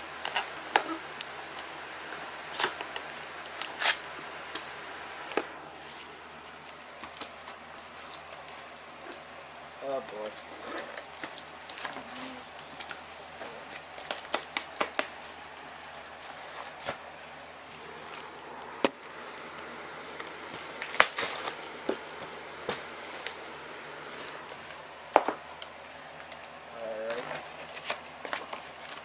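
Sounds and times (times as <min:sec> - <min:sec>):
cardboard packaging handled: 0:10.0 - 0:29.0.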